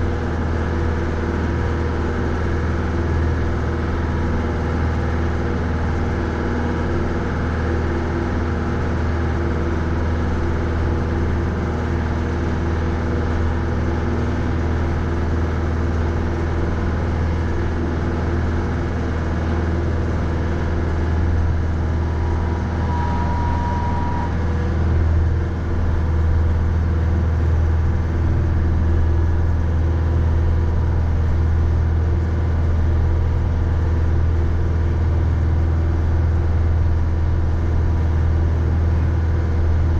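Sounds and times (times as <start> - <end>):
tractor diesel engine droning: 0.0 - 39.9.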